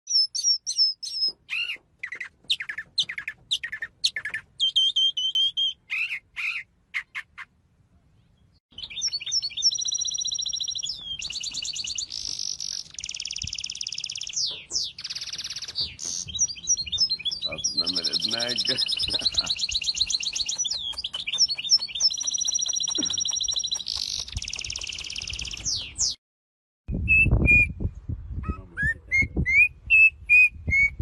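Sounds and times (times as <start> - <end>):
songbird singing: 0.1 - 26.2
fast bird trills: 8.8 - 26.1.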